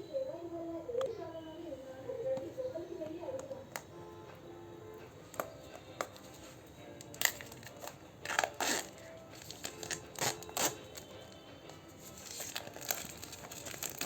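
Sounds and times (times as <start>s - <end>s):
faint background music: 0.0s - 14.0s
packaging crinkling and rustling: 5.3s - 14.0s.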